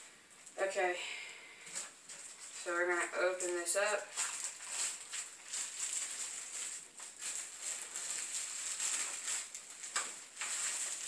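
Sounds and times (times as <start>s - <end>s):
plastic wrapping crinkling: 1.7s - 11.0s.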